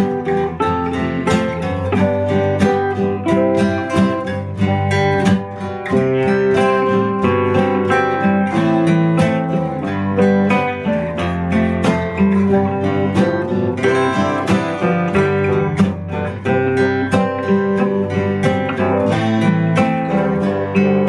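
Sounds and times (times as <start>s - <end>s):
acoustic guitar strumming chords: 0.0s - 21.0s.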